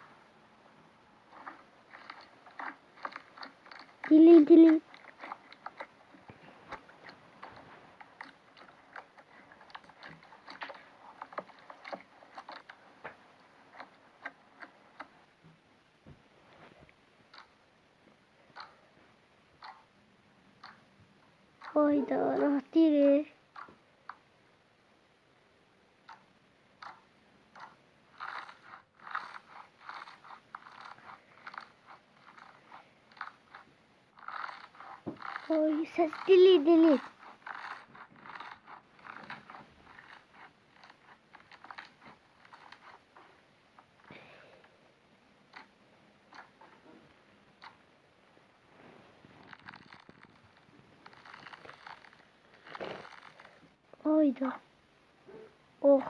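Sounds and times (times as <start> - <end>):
slime clicking and crackling: 1.3 - 15.1, 27.6 - 43.1.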